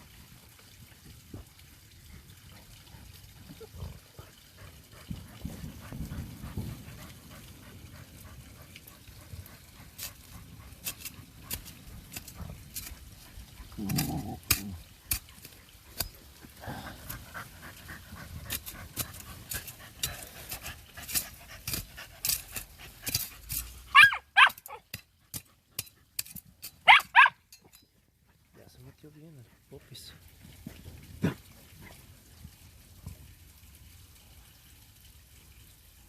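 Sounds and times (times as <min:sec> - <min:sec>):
dog growling: 0:03.4 - 0:05.6, 0:13.6 - 0:14.8
claws scratching at dirt: 0:08.9 - 0:24.8
dog yelping barks: 0:23.9 - 0:24.9, 0:26.8 - 0:27.5.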